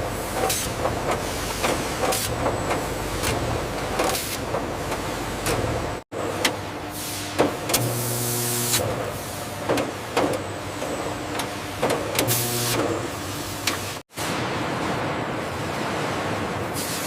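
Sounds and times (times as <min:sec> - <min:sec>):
factory machinery hissing: 0:00.0 - 0:09.6, 0:16.6 - 0:17.0.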